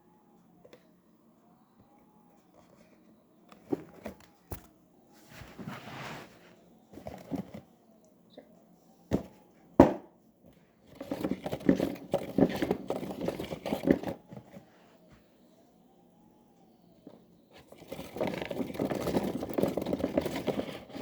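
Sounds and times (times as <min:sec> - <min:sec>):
rustling and crackling: 0:05.1 - 0:07.8, 0:10.8 - 0:15.1, 0:17.1 - 0:21.0.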